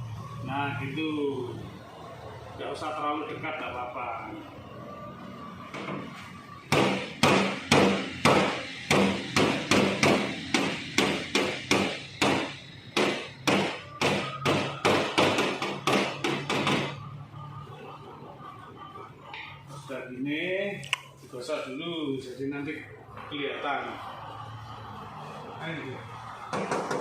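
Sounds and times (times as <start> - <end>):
hammer blows: 6.7 - 17.1.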